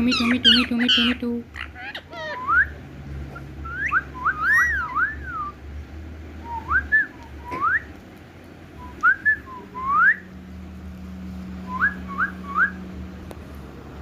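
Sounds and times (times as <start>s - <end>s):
parrot whistling: 0.1s - 5.6s, 8.8s - 10.3s, 11.6s - 12.9s.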